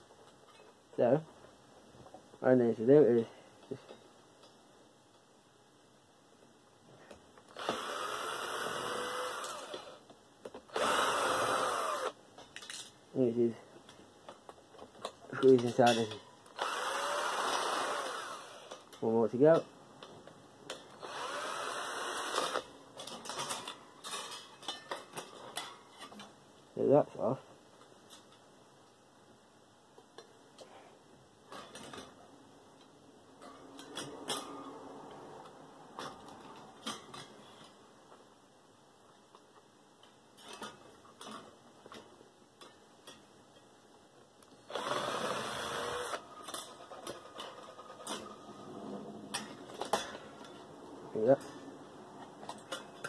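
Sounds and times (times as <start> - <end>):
cordless drill motor whine: 7.5 - 10.0, 10.7 - 12.2, 16.6 - 18.8, 21.0 - 22.7, 44.7 - 46.2.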